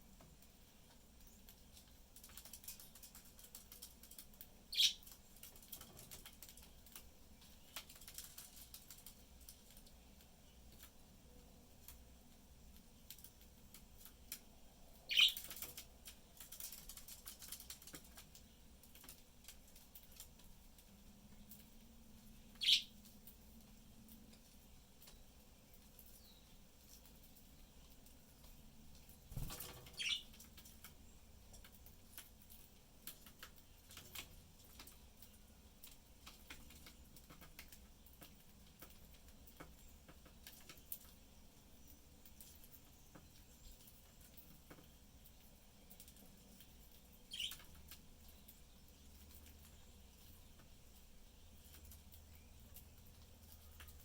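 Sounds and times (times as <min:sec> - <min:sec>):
budgies cracking seeds: 0:01.3 - 0:11.0, 0:12.7 - 0:54.0
budgerigar chirps: 0:04.8 - 0:05.0, 0:15.1 - 0:15.4, 0:22.6 - 0:22.9, 0:30.0 - 0:30.3, 0:47.3 - 0:47.6.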